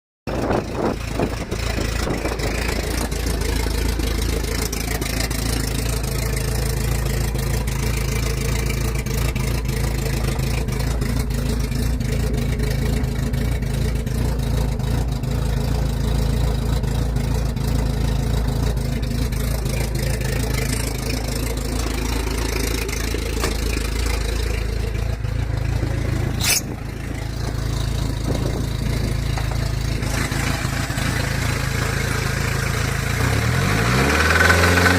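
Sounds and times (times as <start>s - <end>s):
car engine idling with rod knock: 0.3s - 33.4s
sharp click: 26.4s - 26.7s.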